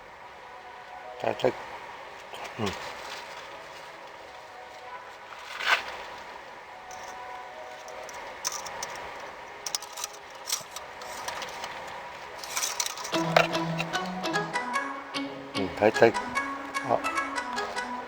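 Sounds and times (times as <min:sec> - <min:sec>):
metallic clicks and rattles: 0:07.8 - 0:11.8, 0:12.4 - 0:13.2
music with plucked strings: 0:13.2 - 0:18.0.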